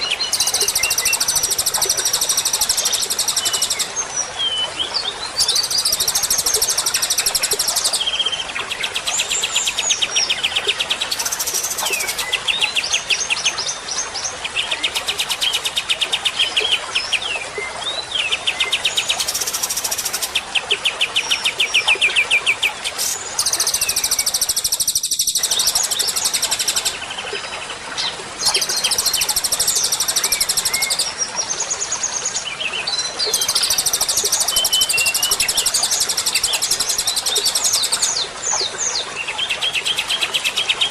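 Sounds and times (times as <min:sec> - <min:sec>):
songbird trills and chatter: 0:00.0 - 0:13.0.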